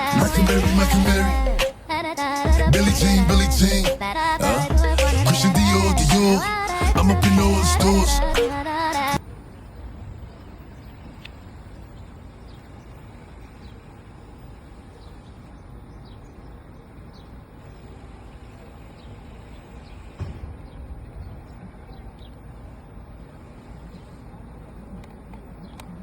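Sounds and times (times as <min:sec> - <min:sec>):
steady low rumble: 0:00.0 - 0:01.6, 0:02.5 - 0:12.7.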